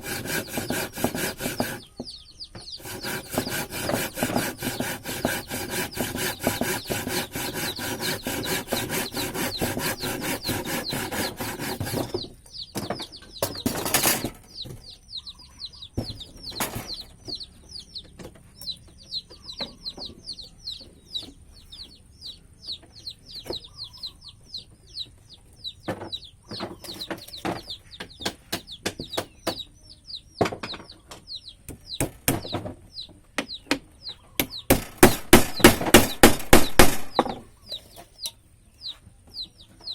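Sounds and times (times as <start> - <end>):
hand tool rubbing wood: 0.0 - 2.0, 2.8 - 12.2
knocks: 10.6 - 14.8, 25.8 - 29.6, 30.4 - 32.8, 33.4 - 37.5.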